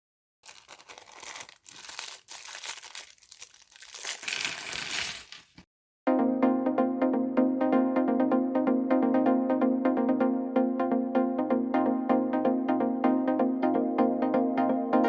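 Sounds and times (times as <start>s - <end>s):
packaging crinkling and rustling: 0.4s - 5.6s
loud electronic music: 6.2s - 15.0s.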